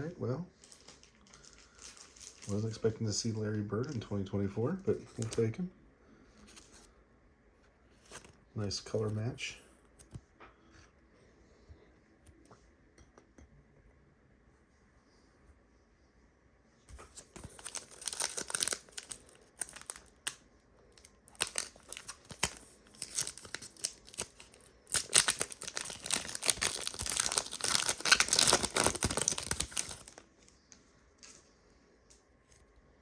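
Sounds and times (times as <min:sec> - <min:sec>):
card pack wrapper crinkling: 0:00.6 - 0:02.9, 0:05.1 - 0:05.5, 0:16.9 - 0:30.7.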